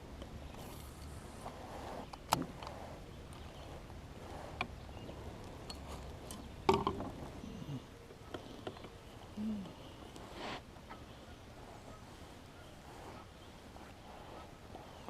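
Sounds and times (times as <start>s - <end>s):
fishing gear clicks and knocks: 5.6s - 7.2s.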